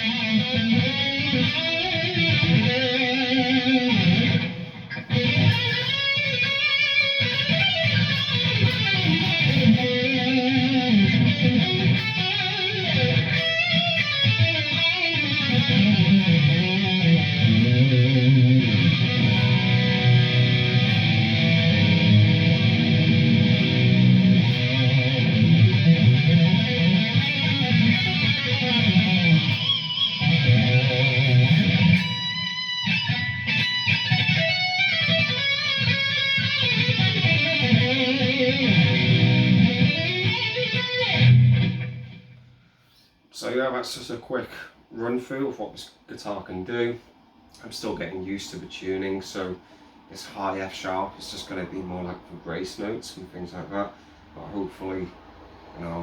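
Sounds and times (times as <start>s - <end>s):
electric guitar playing: 0.0s - 42.8s.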